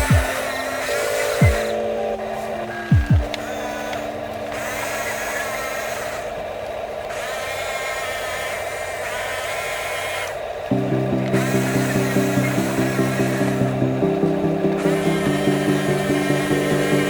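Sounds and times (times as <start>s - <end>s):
small electric motor whirring: 3.3s - 10.7s.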